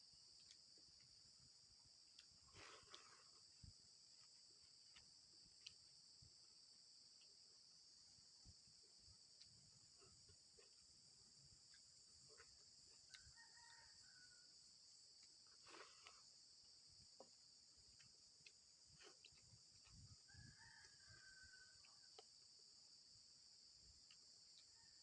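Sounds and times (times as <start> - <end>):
distant rooster crowing: 13.1 - 14.7, 20.1 - 22.2.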